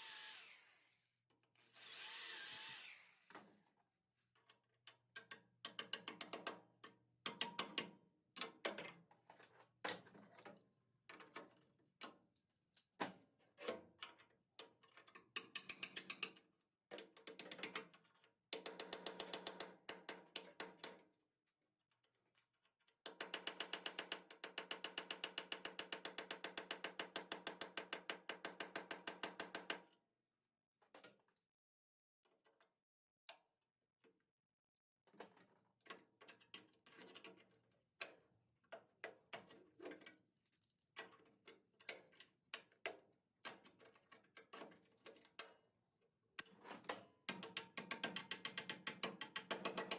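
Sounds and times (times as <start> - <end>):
power drill drilling metal: 0.0 - 3.3.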